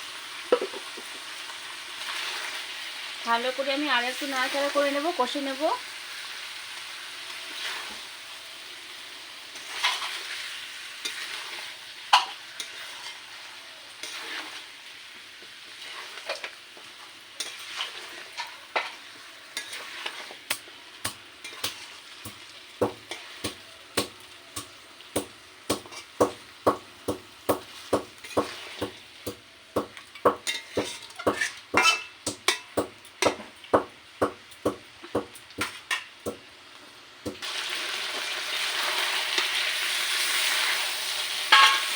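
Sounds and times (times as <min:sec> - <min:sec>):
meat and onion sizzling in oil: 0:00.0 - 0:41.9
spatula scraping a pan: 0:09.5 - 0:14.8, 0:15.6 - 0:16.6, 0:17.4 - 0:20.7, 0:21.4 - 0:23.6, 0:30.4 - 0:32.7, 0:41.5 - 0:41.9.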